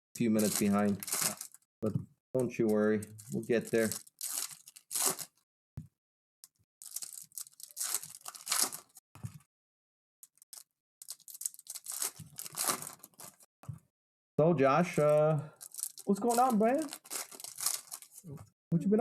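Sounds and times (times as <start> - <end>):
card pack wrappers tearing and crinkling: 0.2 - 1.6, 2.6 - 5.4, 6.8 - 9.0, 10.4 - 13.5, 15.6 - 18.3.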